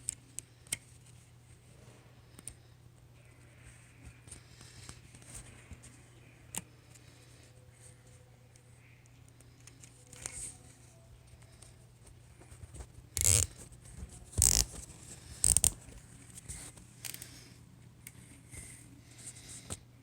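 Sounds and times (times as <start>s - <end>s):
zip ties ratcheting: 13.2s - 13.6s, 14.4s - 14.8s, 15.4s - 15.8s
handling clicks: 14.4s - 14.8s.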